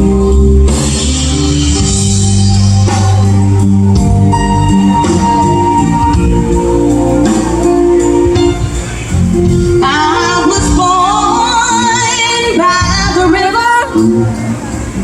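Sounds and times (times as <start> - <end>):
instrumental held notes: 0.0 - 13.0
person singing with vibrato: 9.8 - 14.2.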